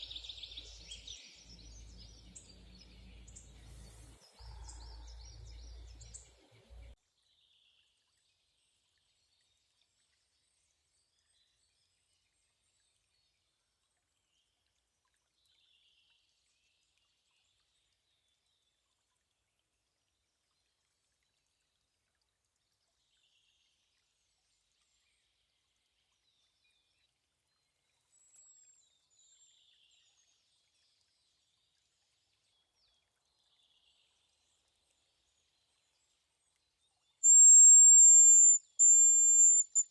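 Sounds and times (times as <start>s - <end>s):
faint bird song: 0.0s - 18.9s, 22.6s - 39.9s
high thin whistle: 37.2s - 39.8s.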